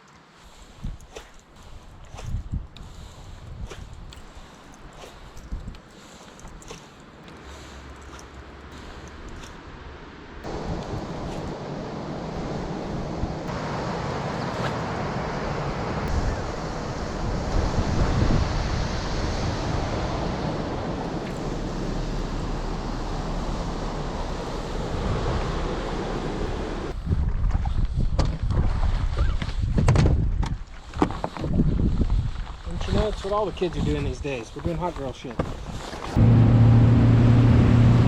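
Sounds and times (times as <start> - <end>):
wind on microphone: 0.5 - 5.9, 10.4 - 34.4.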